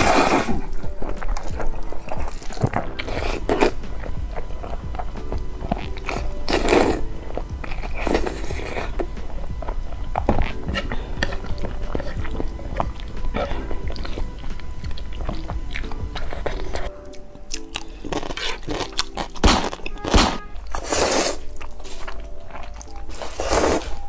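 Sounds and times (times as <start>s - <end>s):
noisy bursts: 0.0s - 16.9s
background music: 0.0s - 24.0s
person chewing noodles: 0.0s - 24.0s.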